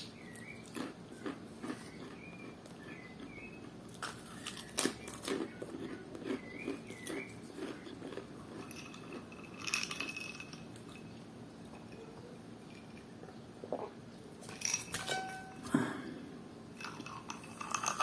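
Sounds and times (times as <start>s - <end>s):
person chewing: 0.2s - 9.4s
small clicks and crunches: 0.4s - 11.0s.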